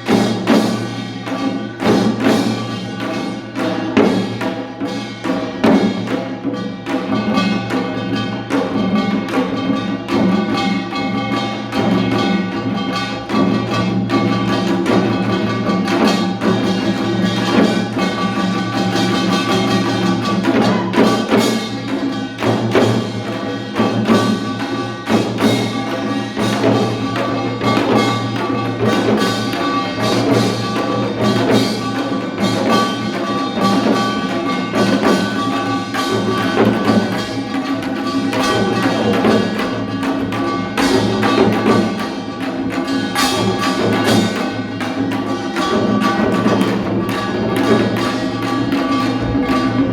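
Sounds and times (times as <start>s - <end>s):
sharp percussion hits: 0.0s - 49.9s.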